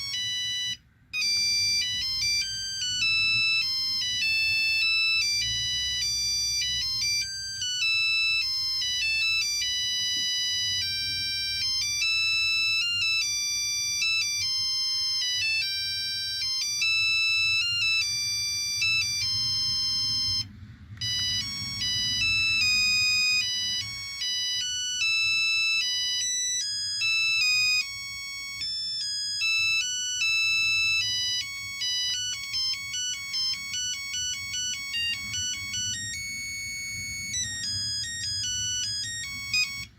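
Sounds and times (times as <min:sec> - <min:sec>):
phone ringtone beeping melodies: 0:00.0 - 0:39.9.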